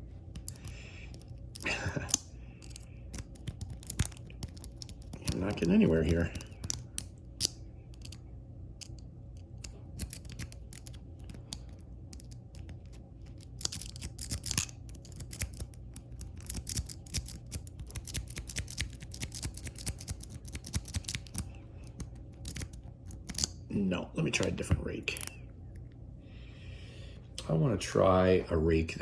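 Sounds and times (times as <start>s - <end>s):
lock pick raking padlock pins: 0.4s - 8.2s, 8.8s - 12.6s, 13.3s - 23.5s.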